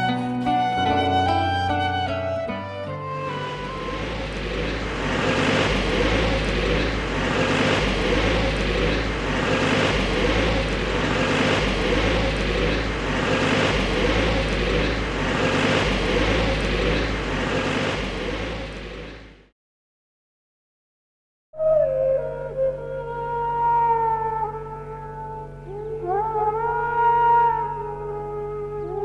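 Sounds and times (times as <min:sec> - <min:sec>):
mechanical rumble with deep hum: 0:03.2 - 0:19.5.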